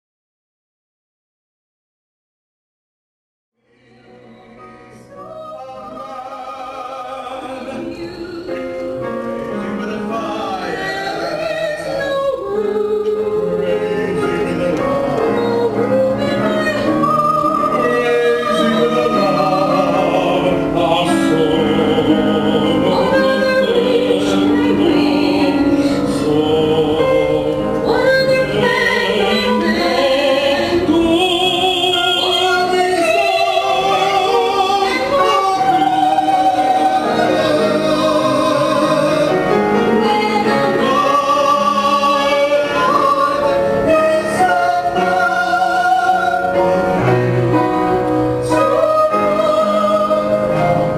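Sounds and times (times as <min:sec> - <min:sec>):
operatic singing with vibrato: 0:03.6 - 0:50.9.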